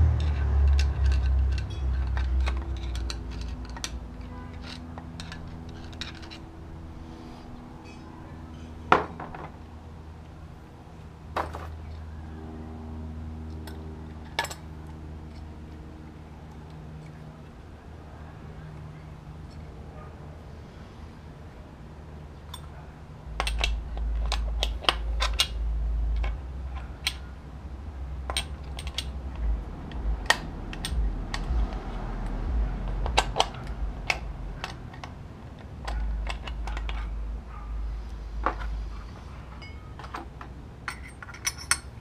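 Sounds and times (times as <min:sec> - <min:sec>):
metallic clicks and clinks: 0:00.1 - 0:06.5, 0:23.4 - 0:27.3, 0:28.2 - 0:37.2, 0:39.6 - 0:42.0
low rumble: 0:23.6 - 0:39.5.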